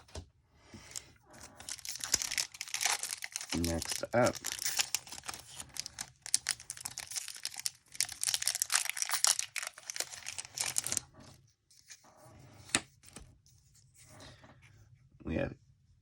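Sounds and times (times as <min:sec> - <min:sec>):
foil wrapper crinkling and tearing: 0:01.5 - 0:11.2.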